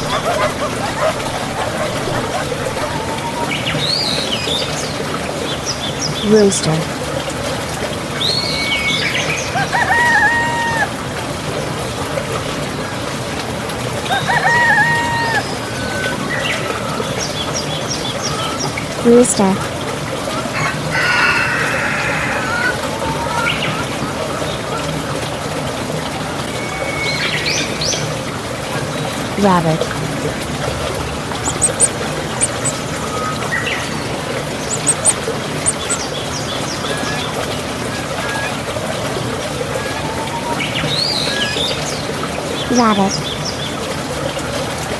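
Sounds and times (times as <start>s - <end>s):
small birds chirping: 0.0s - 4.8s, 31.4s - 37.4s
rooster crowing: 9.6s - 10.9s, 14.1s - 16.0s, 20.6s - 23.5s.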